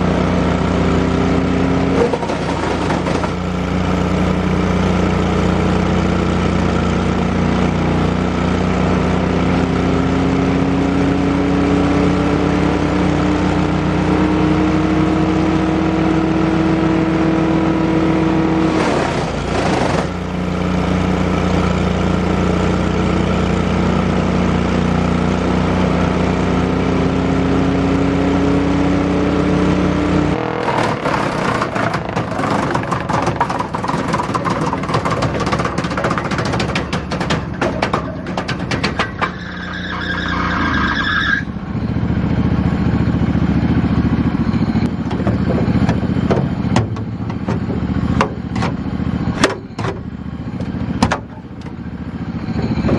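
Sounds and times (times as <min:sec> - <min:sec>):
wood chipper engine whining: 0:00.0 - 0:52.9
crackling clatter: 0:01.9 - 0:03.6, 0:30.5 - 0:40.4
burst of rough noise: 0:30.4 - 0:41.5.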